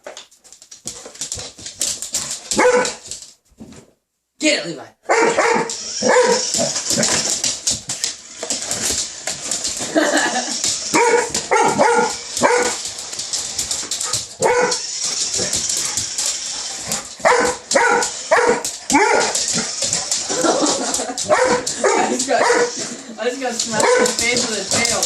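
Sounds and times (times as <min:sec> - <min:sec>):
dog barking: 0:02.6 - 0:03.0, 0:05.1 - 0:06.7, 0:10.9 - 0:12.8, 0:14.4 - 0:14.8, 0:17.2 - 0:19.4, 0:21.2 - 0:22.8, 0:23.8 - 0:24.2.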